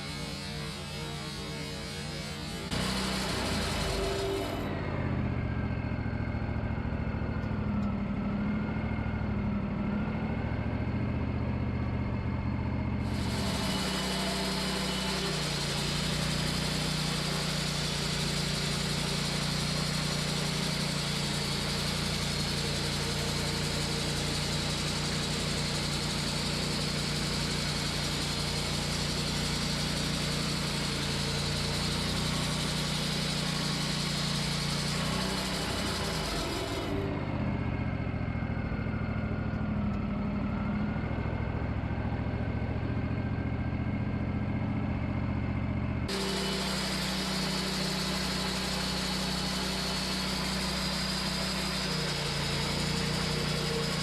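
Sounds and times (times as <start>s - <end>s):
saw blade cutting log: 0.0s - 4.8s, 13.0s - 37.3s, 46.1s - 54.0s
sawmill engine running: 0.0s - 54.0s.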